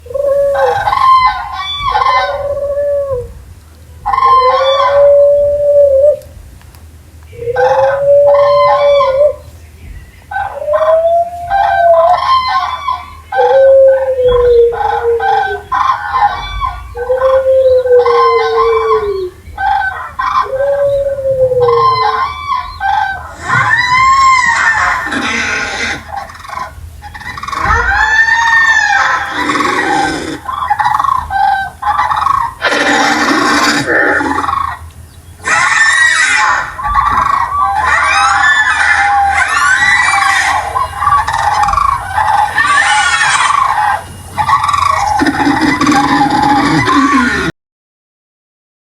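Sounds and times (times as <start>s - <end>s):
creature calls arching in pitch: 21.4s - 26.7s, 27.3s - 30.6s, 32.2s - 34.8s, 35.4s - 40.7s, 41.3s - 47.5s.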